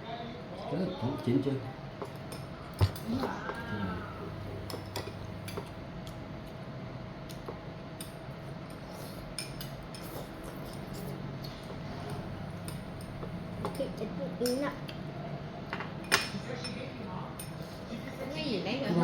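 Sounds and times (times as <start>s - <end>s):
steady low hum: 1.6s - 19.0s
cutlery and bowls clinking: 4.3s - 5.8s, 7.4s - 14.7s, 15.7s - 16.8s.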